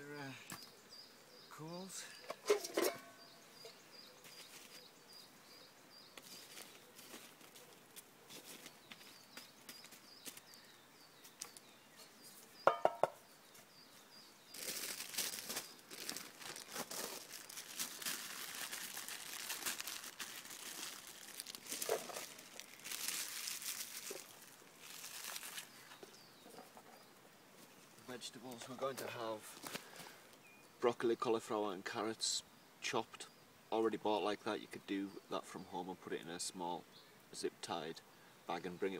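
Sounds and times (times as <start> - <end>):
wrapping crinkling and rustling: 14.5 - 26.1.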